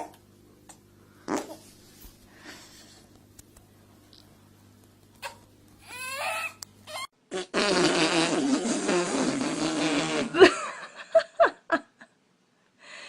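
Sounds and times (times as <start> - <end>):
loud rasping fart: 1.3 - 1.7, 6.1 - 10.5.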